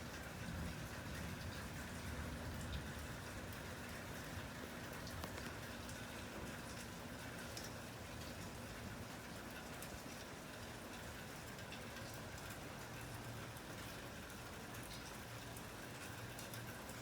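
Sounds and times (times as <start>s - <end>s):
raindrops ticking: 0.0s - 8.5s
steady rain falling: 0.0s - 17.0s.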